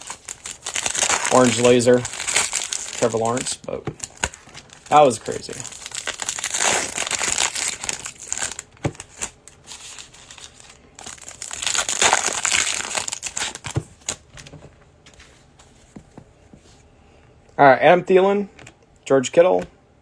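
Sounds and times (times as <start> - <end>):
card pack wrappers tearing and crinkling: 0.0 - 14.5.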